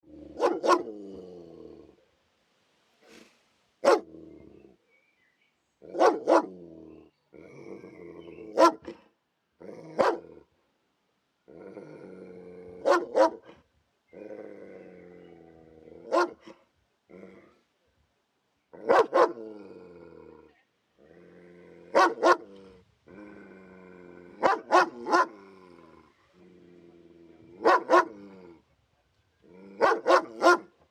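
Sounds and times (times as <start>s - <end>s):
dog growling: 0.0s - 2.0s, 3.9s - 4.8s, 6.0s - 8.6s, 11.5s - 13.3s, 14.1s - 16.2s, 17.1s - 17.6s, 19.2s - 28.7s, 29.4s - 30.5s
dog barking: 0.4s - 0.9s, 3.8s - 4.1s, 5.9s - 6.6s, 8.6s - 9.0s, 10.0s - 10.3s, 12.8s - 13.5s, 16.1s - 16.6s, 18.8s - 19.4s, 21.9s - 22.5s, 24.4s - 25.4s, 27.6s - 28.2s, 29.8s - 30.7s.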